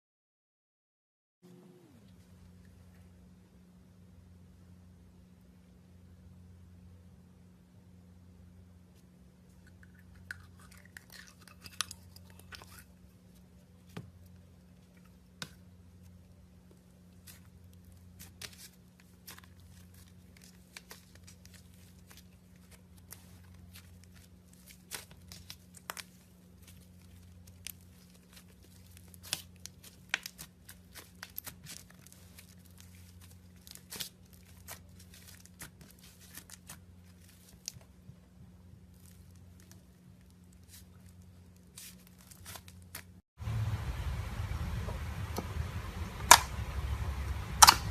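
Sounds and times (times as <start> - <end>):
steady low hum: 1.4 - 47.9
slime popping and crackling: 17.2 - 37.8.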